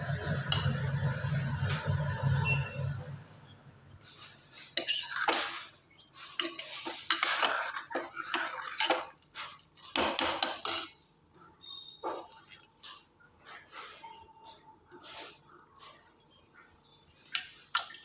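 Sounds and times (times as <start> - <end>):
metal utensils clattering: 10.0 - 11.1.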